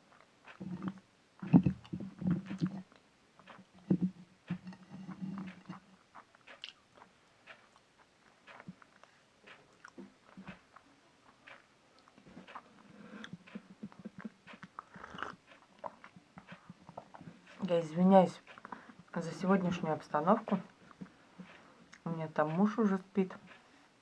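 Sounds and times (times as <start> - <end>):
person chewing chalk: 5.1 - 17.3
mouth clicks: 12.5 - 17.2.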